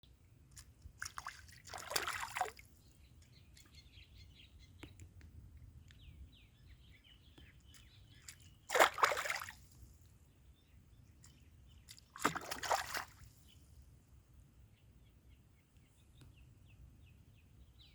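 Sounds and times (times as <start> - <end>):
water splashing: 0.6 - 2.6, 8.2 - 9.7, 11.9 - 13.2
faint rapid bird chirps: 2.0 - 13.8.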